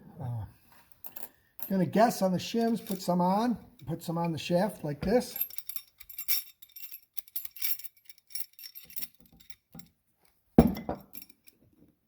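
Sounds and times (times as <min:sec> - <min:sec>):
metal shims clinking: 0:02.5 - 0:09.9, 0:10.6 - 0:11.6.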